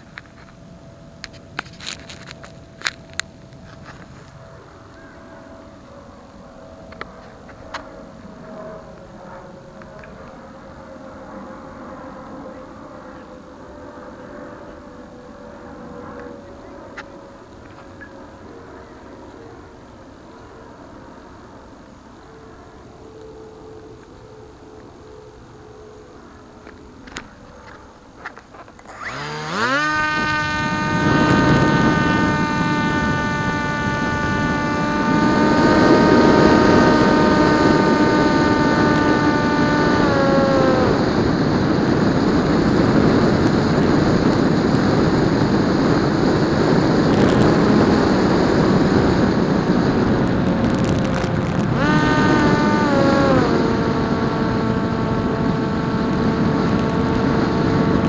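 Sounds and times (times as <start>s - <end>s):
electric motor propeller whine: 0.0s - 58.0s
rushing wind noise: 28.8s - 58.0s.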